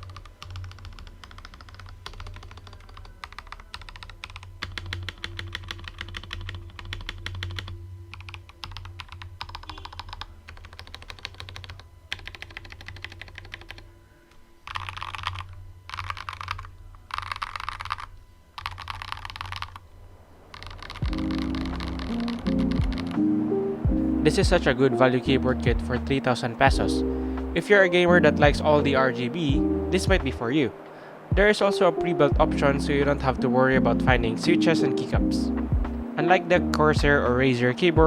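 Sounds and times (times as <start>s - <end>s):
keyboard keystrokes clattering: 0.0s - 13.9s, 14.7s - 19.8s, 20.5s - 23.2s.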